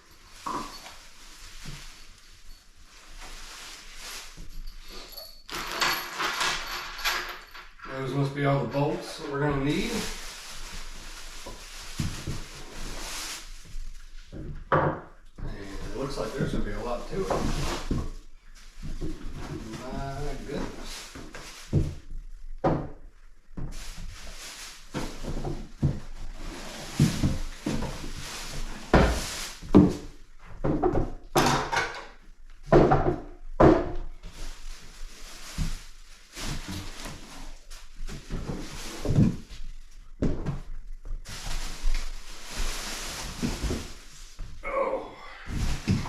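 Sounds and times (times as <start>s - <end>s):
thunks and knocks: 32.7s - 34.1s.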